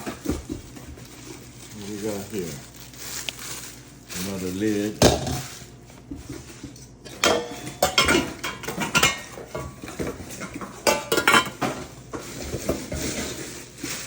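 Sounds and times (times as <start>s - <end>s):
metal pots and lids clattering: 6.2s - 14.0s.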